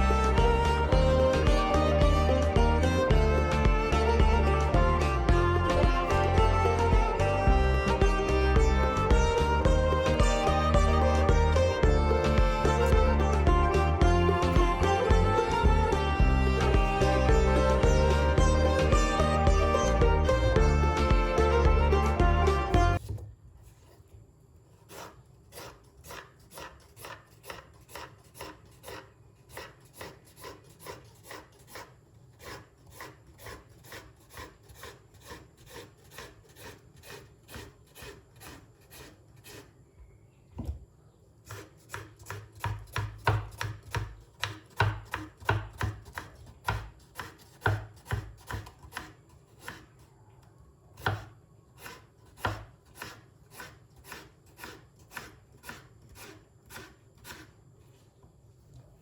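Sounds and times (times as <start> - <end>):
knife chopping on cutting board: 41.5 - 49.9, 51.0 - 57.4.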